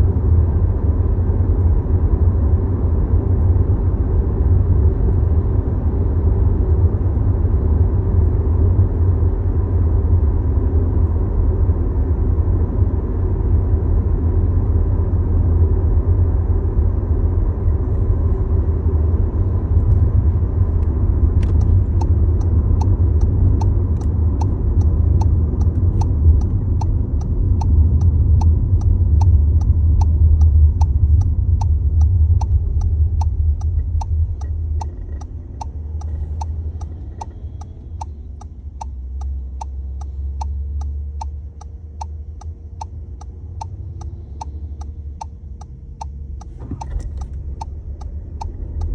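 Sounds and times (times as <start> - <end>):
low rumble inside car: 0.0 - 48.9
regular ticking: 19.0 - 48.9.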